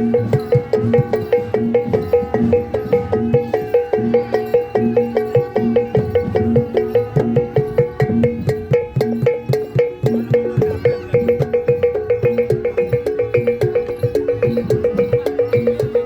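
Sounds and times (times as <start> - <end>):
drum strokes: 0.0 - 16.0.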